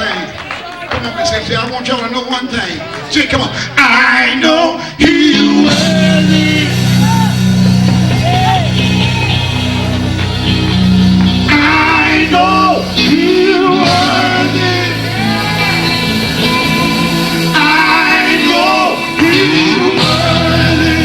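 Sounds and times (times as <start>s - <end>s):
gospel band playing: 0.0s - 21.0s
person singing: 3.7s - 7.4s, 11.4s - 21.0s
bass guitar: 5.0s - 21.0s
electric guitar: 5.6s - 21.0s.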